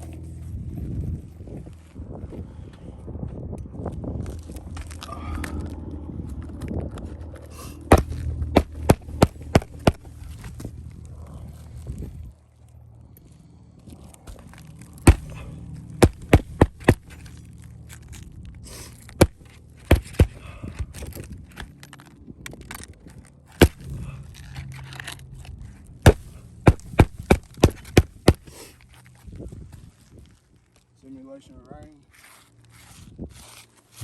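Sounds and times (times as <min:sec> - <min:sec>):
hammer driving nails: 0:07.9 - 0:10.1, 0:16.0 - 0:17.2, 0:19.1 - 0:20.4, 0:23.6 - 0:23.9, 0:26.0 - 0:28.5.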